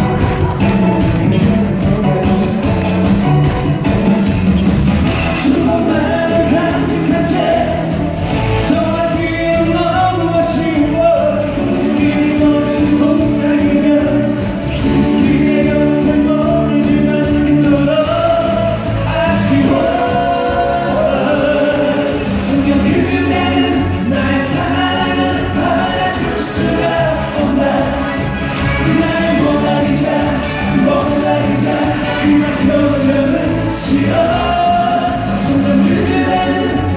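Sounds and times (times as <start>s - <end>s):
live pop band with singing: 0.0s - 36.9s.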